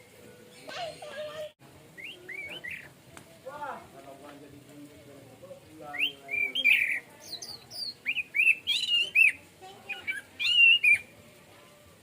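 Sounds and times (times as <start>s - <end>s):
thrush singing whistled phrases: 2.0s - 2.9s, 5.9s - 11.2s.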